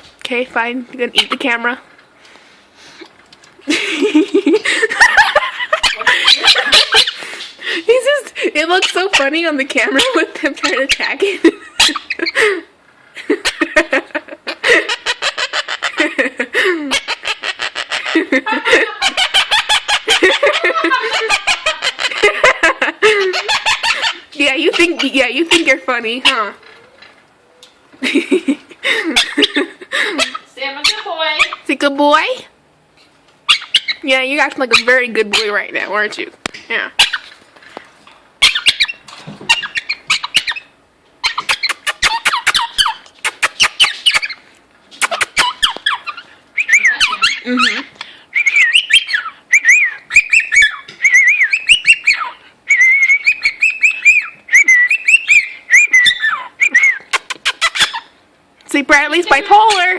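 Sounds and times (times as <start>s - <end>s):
parrot chattering: 1.1s - 1.6s, 5.7s - 7.2s, 8.6s - 12.4s, 14.5s - 16.3s, 16.9s - 27.6s, 29.1s - 31.7s, 33.5s - 35.8s, 36.9s - 37.4s, 38.4s - 44.4s, 45.0s - 58.2s
parrot giggling calls: 3.7s - 7.4s, 8.6s - 31.6s, 38.4s - 44.4s, 45.0s - 58.2s.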